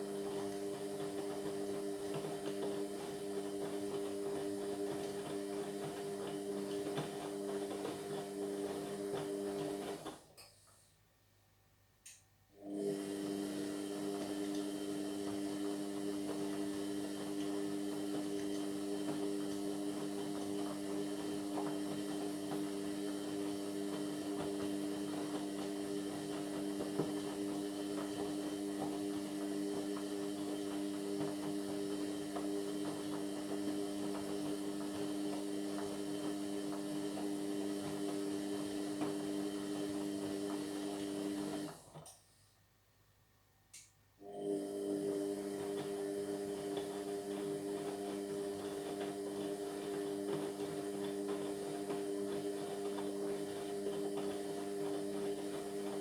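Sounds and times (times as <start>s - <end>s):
drain pump humming: 12.6s - 41.8s, 44.2s - 56.0s.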